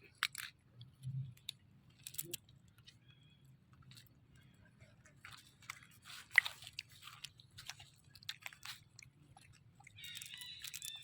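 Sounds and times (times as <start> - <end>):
monkey chewing food: 4.8 - 11.0
high-pitched squeaky call: 10.0 - 11.0.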